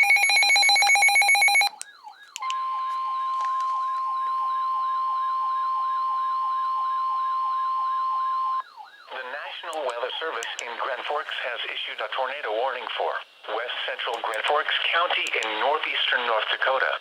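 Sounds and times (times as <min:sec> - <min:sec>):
rapid pulsing electronic alarm: 0:00.0 - 0:09.3
up-and-down siren sweep: 0:00.6 - 0:09.3.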